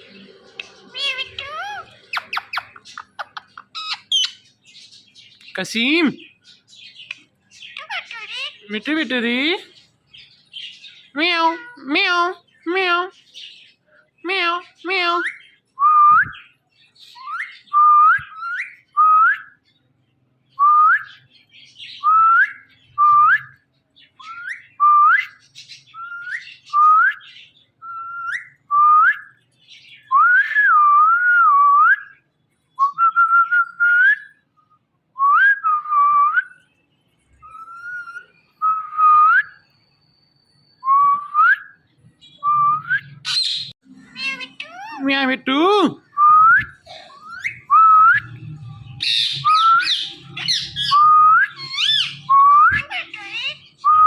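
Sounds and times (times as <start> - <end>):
parrot whistling: 42.4 - 45.3, 46.1 - 54.0.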